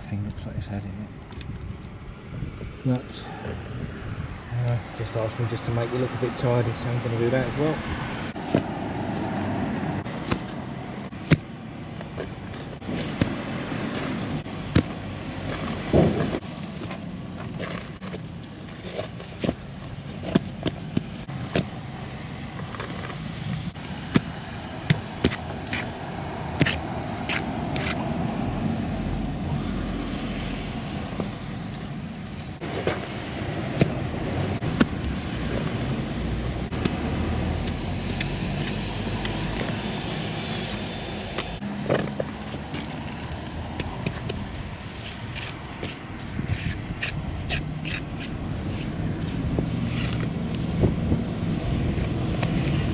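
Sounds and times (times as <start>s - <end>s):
trowel scraping and tapping mortar: 43.8s - 49.0s.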